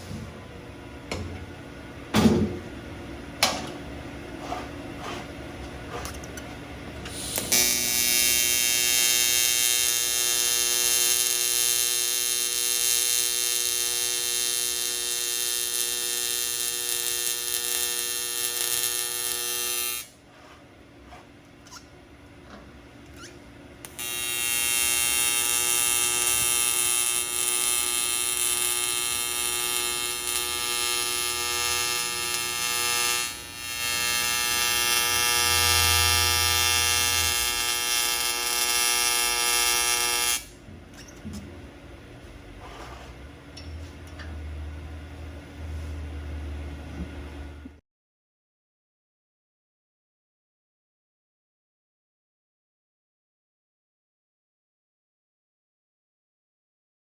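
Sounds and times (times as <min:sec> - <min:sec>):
welding arc buzzing: 0:07.0 - 0:21.8, 0:23.1 - 0:41.1.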